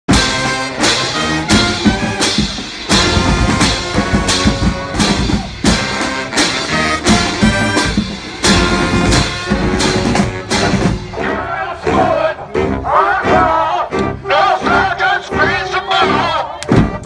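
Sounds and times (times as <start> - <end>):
brass marching band playing: 0.1 - 17.0
loud drum hits: 1.4 - 11.2.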